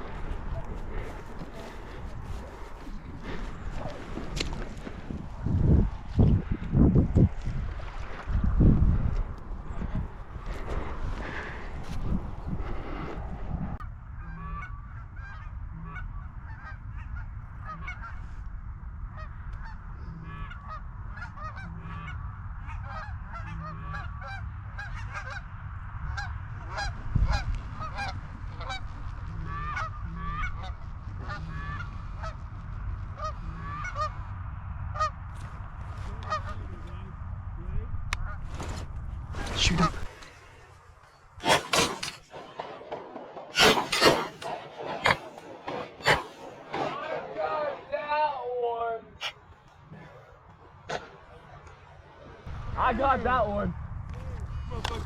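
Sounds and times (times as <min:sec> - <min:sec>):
low rumble: 0:00.0 - 0:47.4, 0:50.6 - 0:55.0
geese honking: 0:14.1 - 0:18.5, 0:19.1 - 0:32.5, 0:33.1 - 0:34.3, 0:34.9 - 0:35.2, 0:36.1 - 0:36.7.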